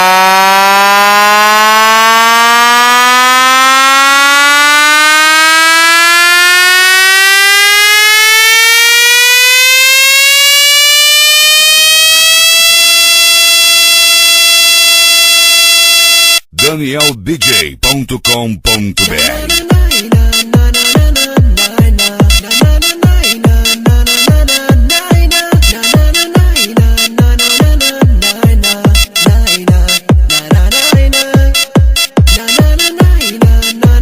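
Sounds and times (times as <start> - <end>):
buzzy synth tone sweeping upward: 0.0 - 16.7.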